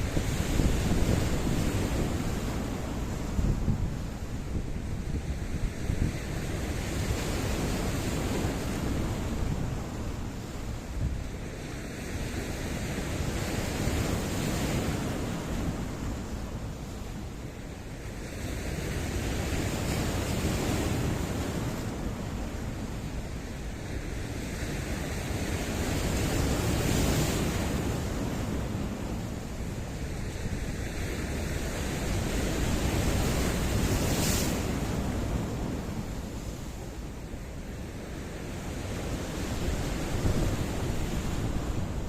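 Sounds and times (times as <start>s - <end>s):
sea waves washing over rocks: 25.0s - 42.0s.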